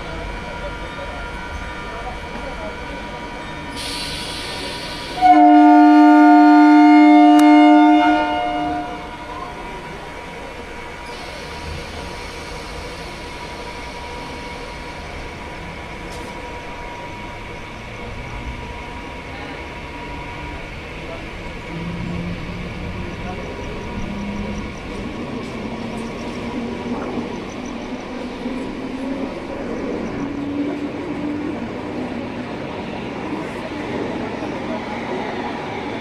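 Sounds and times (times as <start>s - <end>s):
train running noise: 0.0s - 36.0s
train horn blast: 5.1s - 9.3s.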